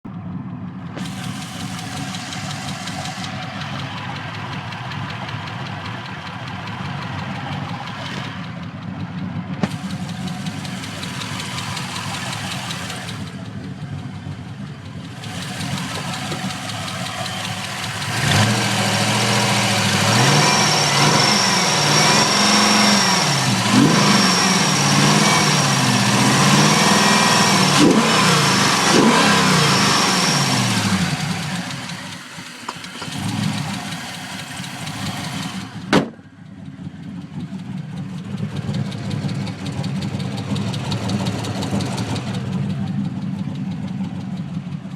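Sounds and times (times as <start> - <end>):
car engine idling and revving: 0.0 - 44.9
engine ticking: 0.0 - 44.9
sharp exhaust crack: 0.9 - 13.7.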